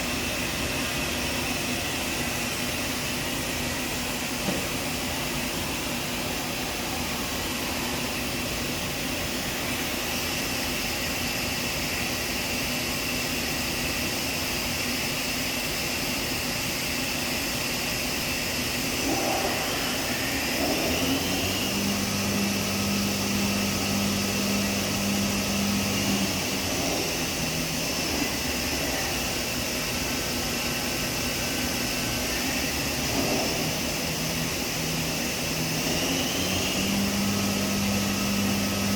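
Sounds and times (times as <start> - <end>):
machine whirring: 16.3 - 38.9.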